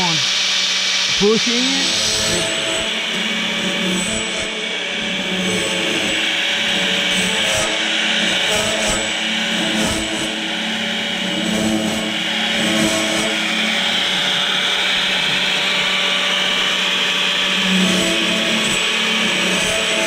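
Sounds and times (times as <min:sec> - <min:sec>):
grinding wheel grinding saw teeth: 0:00.0 - 0:20.0
motor hum: 0:00.0 - 0:20.0.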